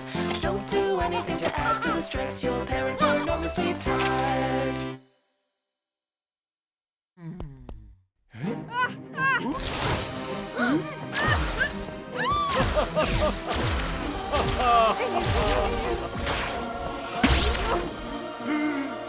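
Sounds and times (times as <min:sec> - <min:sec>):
background music: 0:00.0 - 0:05.2, 0:08.4 - 0:19.0
cartoon whacks and crashes: 0:11.2 - 0:18.0.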